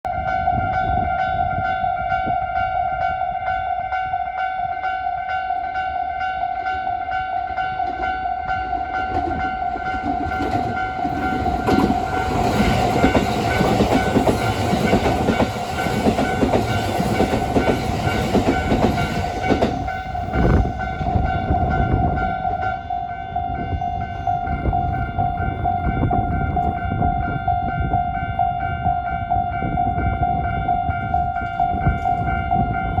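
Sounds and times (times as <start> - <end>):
level crossing warning bell: 0.1 - 33.0
train wheels clattering: 7.8 - 22.8.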